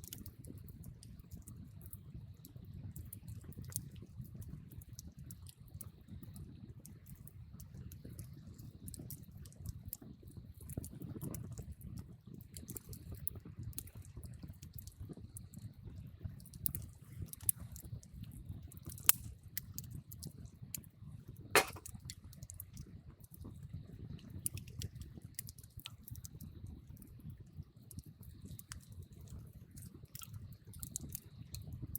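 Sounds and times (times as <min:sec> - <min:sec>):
campfire crackling and popping: 0:00.0 - 0:31.9
low fire rumble: 0:00.0 - 0:31.9.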